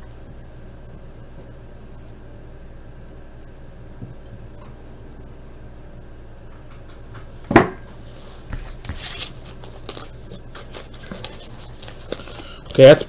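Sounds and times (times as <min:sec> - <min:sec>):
wrapper rustling: 0:07.9 - 0:13.0.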